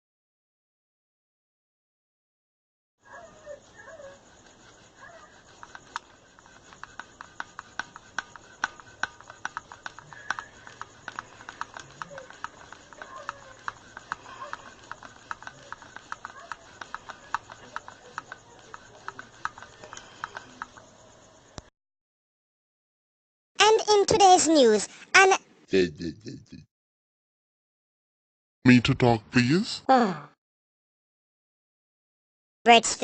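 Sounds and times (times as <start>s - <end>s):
rapid sharp clicking: 4.4s - 20.9s.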